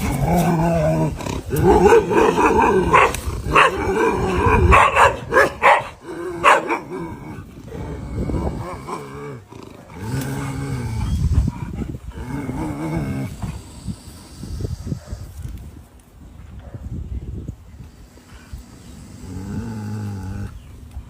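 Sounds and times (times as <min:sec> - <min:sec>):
dogs barking: 0:01.5 - 0:07.0.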